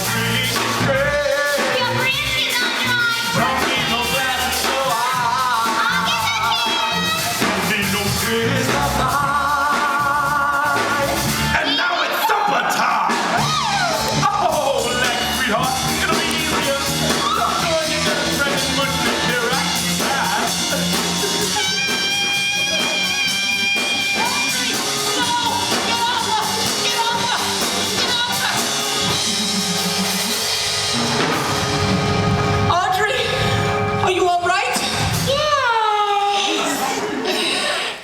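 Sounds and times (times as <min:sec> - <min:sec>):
person singing with rock band: 0:00.0 - 0:29.7.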